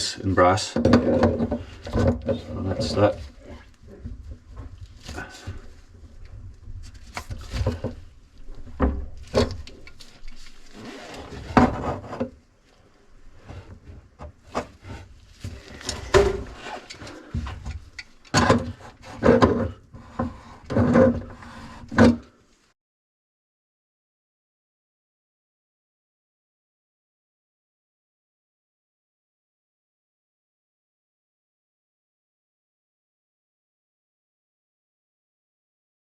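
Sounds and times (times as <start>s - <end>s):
drain parts scraping and knocking: 0.7s - 12.4s, 13.4s - 22.3s.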